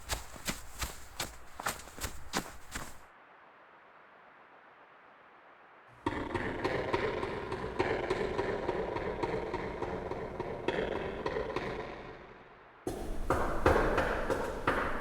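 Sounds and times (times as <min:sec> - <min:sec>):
quick footsteps with scuffing: 0:00.0 - 0:03.1.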